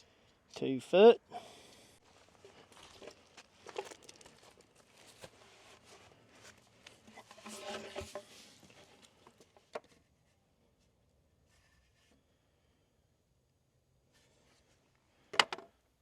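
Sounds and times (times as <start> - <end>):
scraping and rustling of digging: 2.0 - 9.7.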